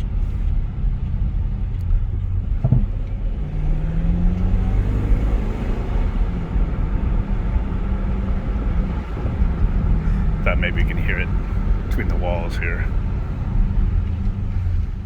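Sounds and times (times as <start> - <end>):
car engine while driving: 0.0 - 15.0
brief clunk: 2.6 - 3.1.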